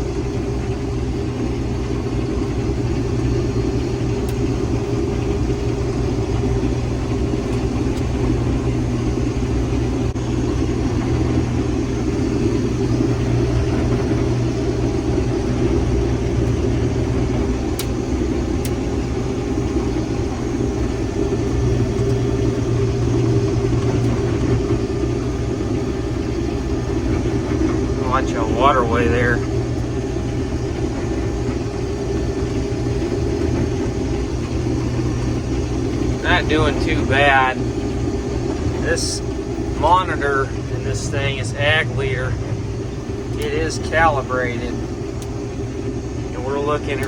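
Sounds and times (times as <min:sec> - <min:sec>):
combine harvester droning: 0:00.0 - 0:47.0.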